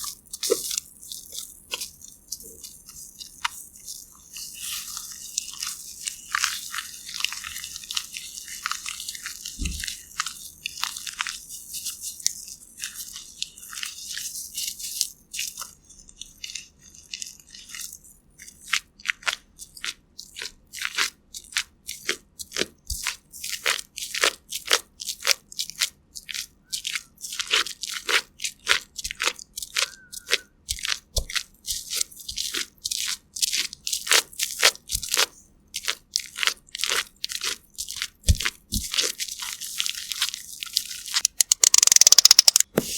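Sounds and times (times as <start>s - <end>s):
scratchy crackle: 40.9s - 42.8s.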